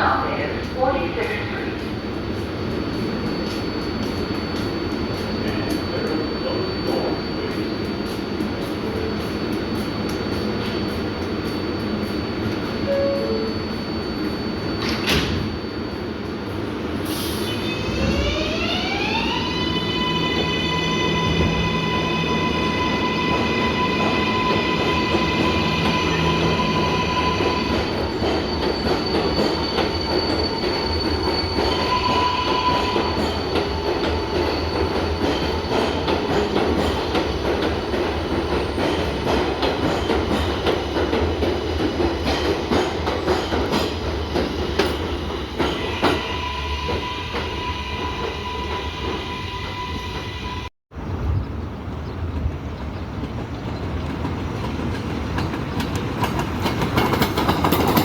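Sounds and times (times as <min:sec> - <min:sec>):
subway train rumbling on rails: 0:00.0 - 0:58.0
rail clicks: 0:17.9 - 0:50.5, 0:52.2 - 0:58.0.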